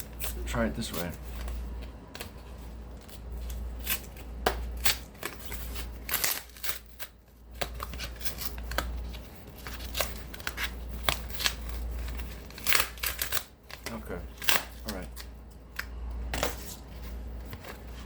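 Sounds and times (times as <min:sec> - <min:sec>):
cardboard ripping: 0:03.0 - 0:15.3.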